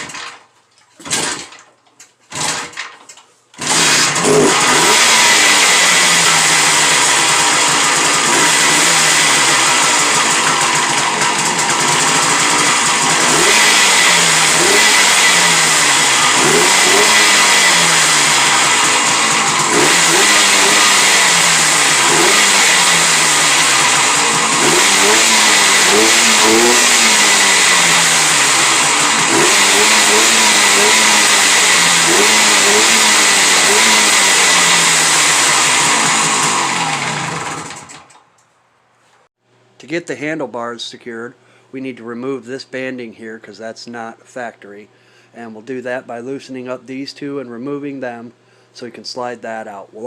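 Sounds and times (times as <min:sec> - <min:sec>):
two-stroke engine revving: 0:01.0 - 0:01.6, 0:02.3 - 0:02.9, 0:03.6 - 0:38.2.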